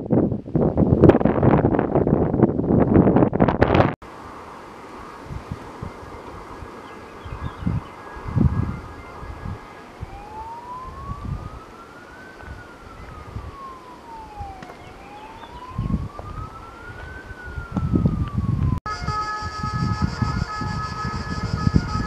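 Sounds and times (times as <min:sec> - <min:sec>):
steady tones: 0:04.1 - 0:11.8, 0:18.9 - 0:22.0
siren wailing: 0:04.9 - 0:22.0.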